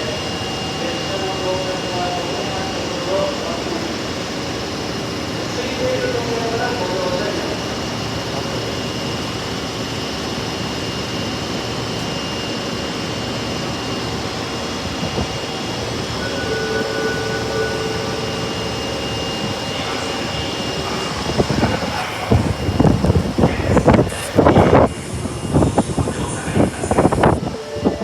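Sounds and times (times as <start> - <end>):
subway train hum and hiss: 0.0 - 28.0
faint steady tones: 15.3 - 25.6.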